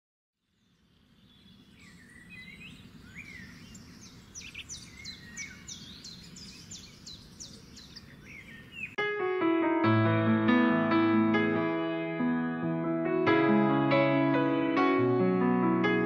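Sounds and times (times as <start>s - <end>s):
birds singing: 0.4s - 9.0s.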